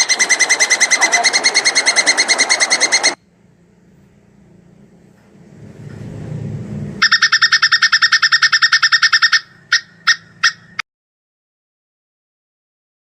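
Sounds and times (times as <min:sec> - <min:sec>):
squirrel chattering call: 0:00.0 - 0:03.2, 0:07.0 - 0:10.8
low rumble: 0:00.0 - 0:07.0.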